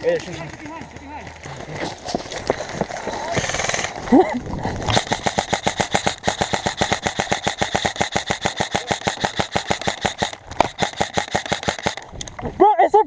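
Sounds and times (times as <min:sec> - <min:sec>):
airsoft rifle firing full auto: 0:04.9 - 0:12.1.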